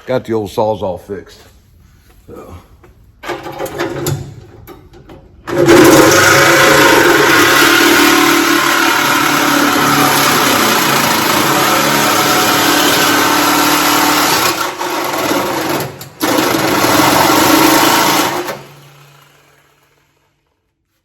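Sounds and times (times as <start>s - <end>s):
reciprocating saw cutting sheet metal: 5.5s - 15.6s.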